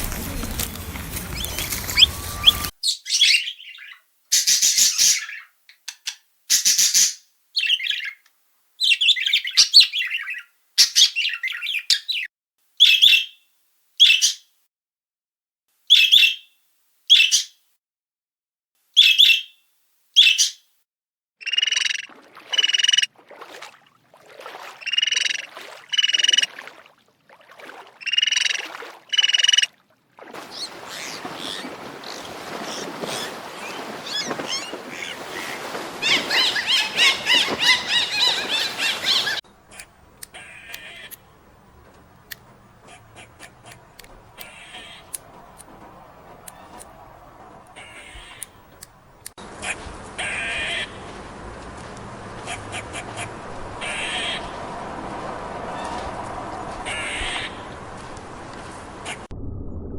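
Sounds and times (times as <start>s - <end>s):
birds squawking: 0.0s - 5.5s, 21.4s - 23.1s, 24.4s - 26.8s, 27.6s - 29.7s, 30.4s - 51.0s, 52.4s - 54.6s, 56.8s - 57.8s.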